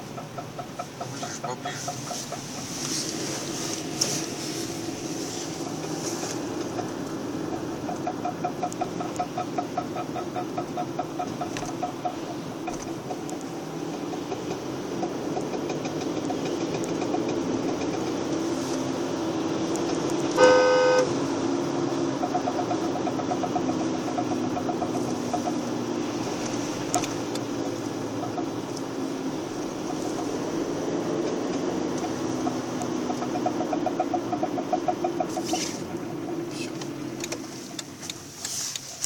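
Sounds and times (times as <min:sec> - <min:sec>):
car engine knocking: 0:00.0 - 0:03.2, 0:04.9 - 0:38.2
car horn honk: 0:20.4 - 0:21.2.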